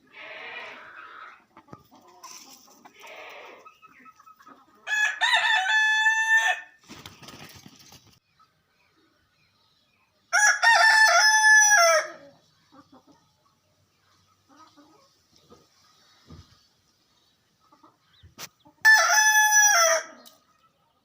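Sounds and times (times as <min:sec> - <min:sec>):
rooster crowing: 0:04.9 - 0:06.7, 0:10.3 - 0:12.2, 0:18.8 - 0:20.2.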